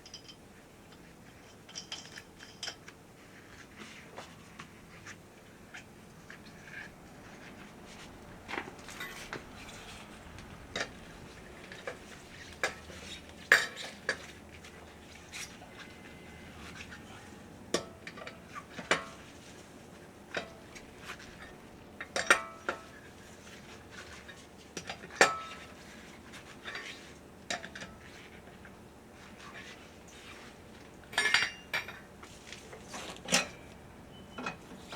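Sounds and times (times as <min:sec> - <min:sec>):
metal tools clinking: 0:06.6 - 0:19.3, 0:31.1 - 0:32.0, 0:32.7 - 0:34.6.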